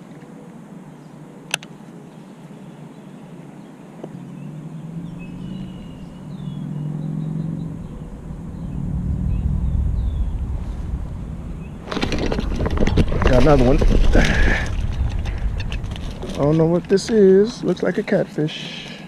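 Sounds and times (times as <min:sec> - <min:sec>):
faint birds chirping: 0:00.0 - 0:19.0
wind rumble on microphone: 0:04.6 - 0:17.8.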